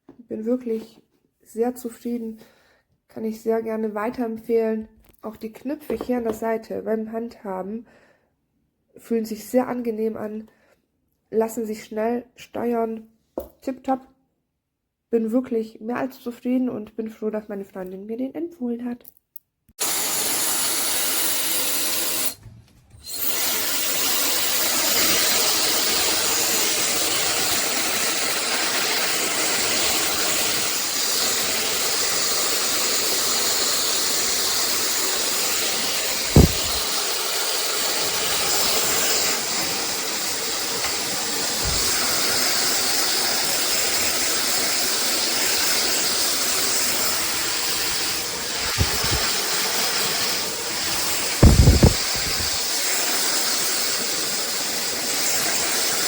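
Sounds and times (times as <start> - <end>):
hair dryer blowing: 19.8 - 22.4, 23.0 - 56.0
short thump: 36.3 - 36.8.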